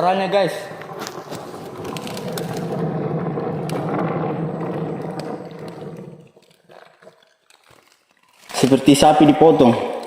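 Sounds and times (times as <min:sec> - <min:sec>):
liquid rushing and gurgling: 0:00.2 - 0:08.0.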